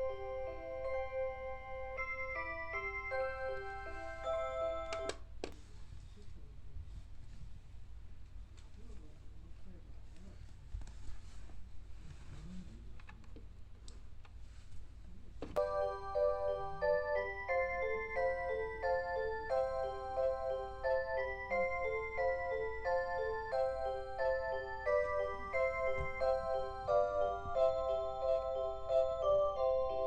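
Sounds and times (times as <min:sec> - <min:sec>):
electronic chime melody: 0:00.0 - 0:05.1, 0:15.6 - 0:30.0
alarm clock click: 0:02.0 - 0:05.2, 0:15.6 - 0:30.0.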